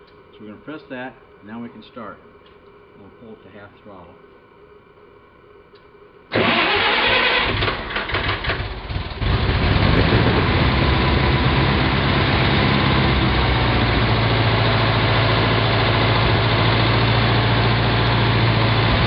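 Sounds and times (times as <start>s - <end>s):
compressor engine running: 6.3s - 19.0s.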